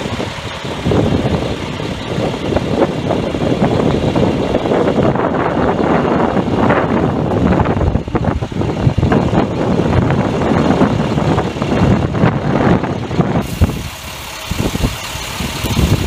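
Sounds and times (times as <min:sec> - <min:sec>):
large engine idling: 0:00.0 - 0:16.0
high hiss: 0:13.4 - 0:16.0.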